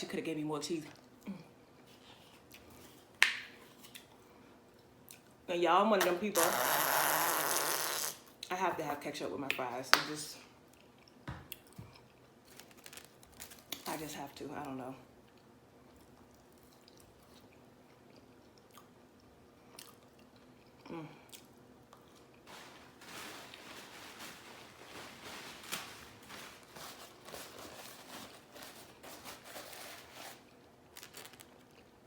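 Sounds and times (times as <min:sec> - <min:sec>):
person chewing food: 0:15.3 - 0:22.5.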